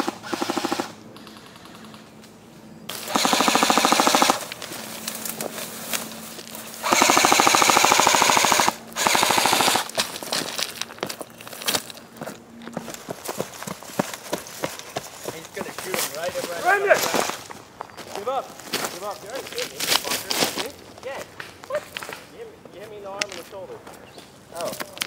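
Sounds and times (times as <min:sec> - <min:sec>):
airsoft guns firing full auto: 0:00.0 - 0:02.2, 0:02.9 - 0:04.6, 0:06.8 - 0:10.1, 0:16.7 - 0:17.5
sharp ticks: 0:00.0 - 0:05.5, 0:06.8 - 0:10.1.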